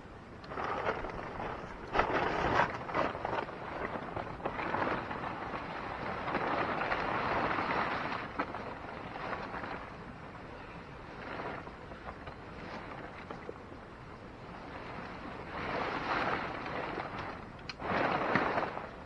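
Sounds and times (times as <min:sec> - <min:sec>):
nylon tent fabric rustling: 0:00.5 - 0:09.9, 0:14.6 - 0:19.0.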